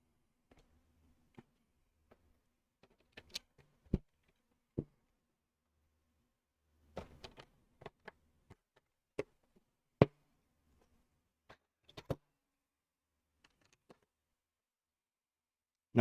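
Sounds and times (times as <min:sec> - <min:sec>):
plastic bricks clicking together: 0:02.8 - 0:03.6.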